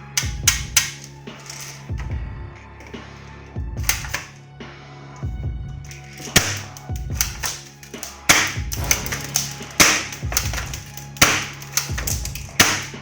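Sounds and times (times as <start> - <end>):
sharp clap-like hit: 8.0 - 10.6
low bass line: 8.5 - 10.8.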